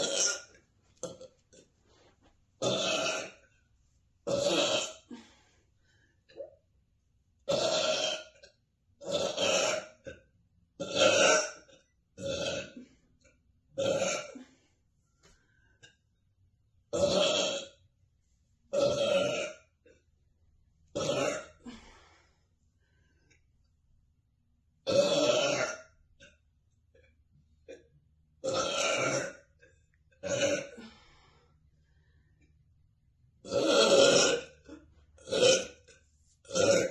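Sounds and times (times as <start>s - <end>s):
woman burping: 0.0s - 1.3s, 2.6s - 3.4s, 4.3s - 5.3s, 7.5s - 10.1s, 10.8s - 11.6s, 12.2s - 12.9s, 13.8s - 14.5s, 16.9s - 17.8s, 18.7s - 19.6s, 21.0s - 21.8s, 24.9s - 25.9s, 28.4s - 29.5s, 30.2s - 31.0s, 33.4s - 35.9s, 36.5s - 36.9s.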